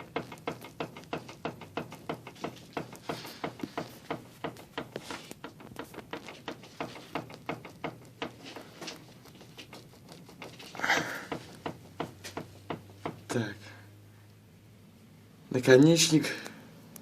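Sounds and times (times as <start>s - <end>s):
steering rack knocking: 0.0s - 9.8s, 10.4s - 13.5s.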